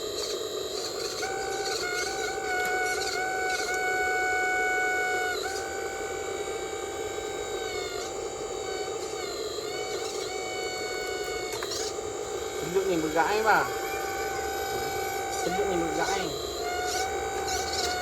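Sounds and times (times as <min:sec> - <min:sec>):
electric motor whine: 0:00.0 - 0:18.0.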